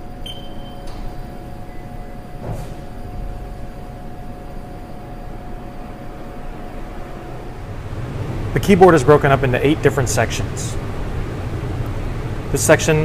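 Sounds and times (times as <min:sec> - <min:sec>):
machine hum and rumble: 0:00.0 - 0:13.0
short high beep: 0:00.2 - 0:01.0.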